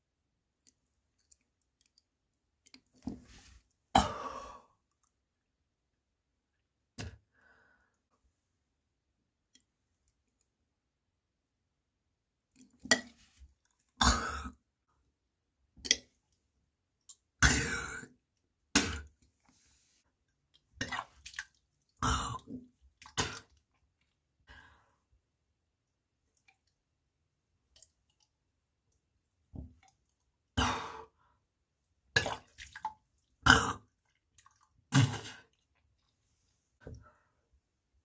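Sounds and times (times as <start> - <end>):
person gagging and burping: 3.9 - 4.7, 14.0 - 14.6, 17.4 - 19.1, 22.0 - 23.5, 30.6 - 31.0, 33.4 - 34.0, 34.9 - 35.6.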